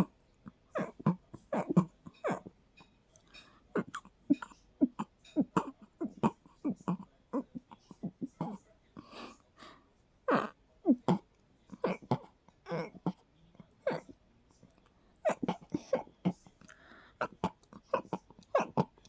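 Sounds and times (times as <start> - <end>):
person stifling sneezes: 13.8 - 14.2, 15.2 - 16.4
sharp breaths: 16.6 - 17.2.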